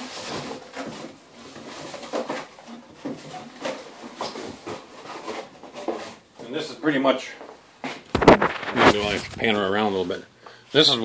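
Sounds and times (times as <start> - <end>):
cardboard rustling and scraping: 0.1 - 6.2, 8.2 - 9.8
sharp knocks: 8.2 - 9.6.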